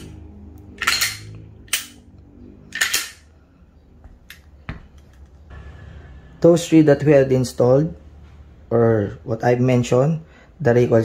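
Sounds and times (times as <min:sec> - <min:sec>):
pistol slide clacking: 0:00.7 - 0:02.0, 0:02.7 - 0:03.3.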